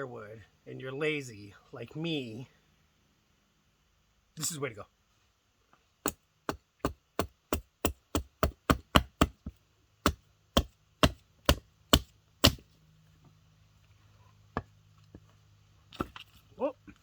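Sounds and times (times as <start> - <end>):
blade chopping log: 6.1 - 9.4, 10.0 - 12.6.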